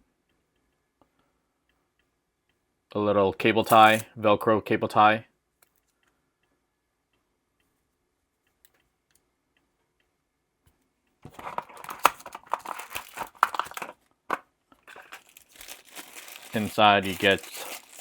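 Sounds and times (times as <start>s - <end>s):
packaging crinkling: 3.7s - 4.0s, 11.4s - 14.0s, 14.8s - 18.0s.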